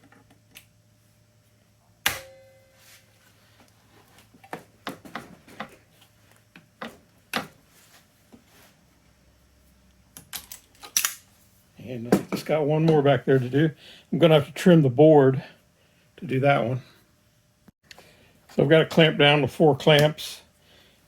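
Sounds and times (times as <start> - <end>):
sharp metallic clank: 2.1 - 2.8.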